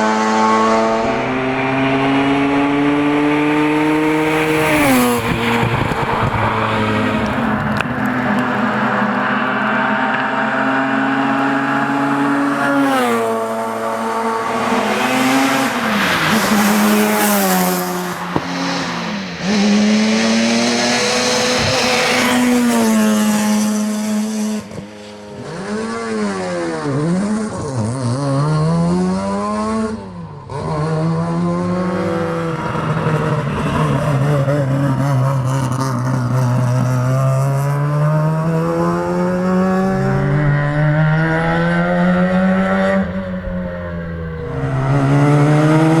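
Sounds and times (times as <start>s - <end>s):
rotary engine revving: 0.0s - 24.6s, 37.2s - 46.0s.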